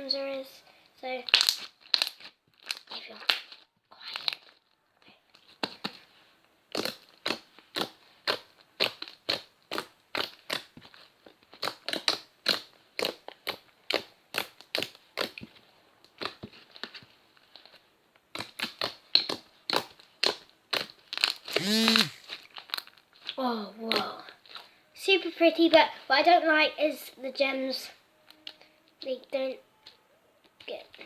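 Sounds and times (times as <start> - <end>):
slime squeezed with wet pops: 1.3 - 4.4, 6.7 - 10.8.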